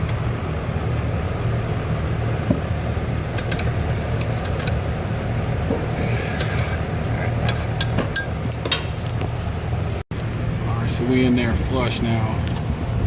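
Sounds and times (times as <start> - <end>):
steady low hum: 0.0 - 13.0
hand tools clicking and clinking: 3.4 - 4.8, 7.4 - 9.1.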